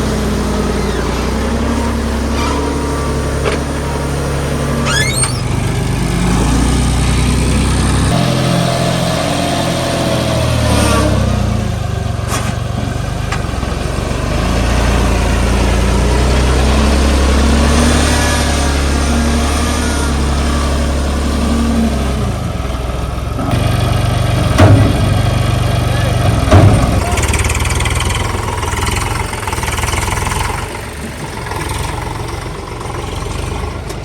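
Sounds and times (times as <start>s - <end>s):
tractor diesel engine working: 0.0s - 34.0s
brief high squeal: 0.8s - 3.2s, 4.8s - 5.5s.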